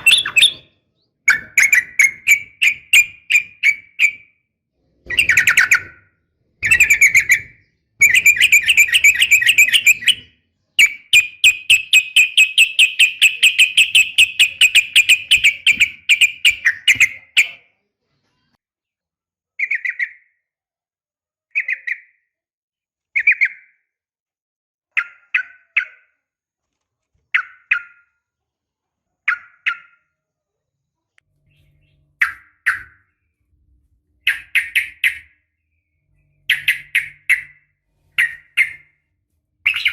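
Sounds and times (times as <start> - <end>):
bulbul calling: 0.0 - 0.7, 6.6 - 17.6, 31.4 - 33.2, 34.2 - 35.4, 36.4 - 39.0, 39.6 - 39.9.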